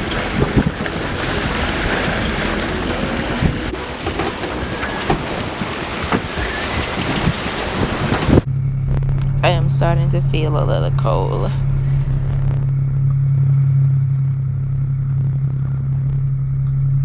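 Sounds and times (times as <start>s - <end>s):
sea rushing past: 0.0s - 8.4s
wind buffeting microphone: 0.0s - 9.8s
steady low hum: 0.0s - 17.0s.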